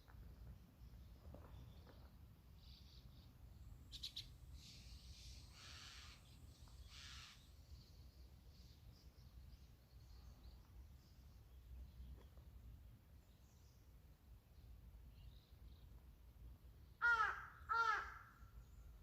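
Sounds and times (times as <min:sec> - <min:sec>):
birds chirping and calling: 0:03.9 - 0:08.0.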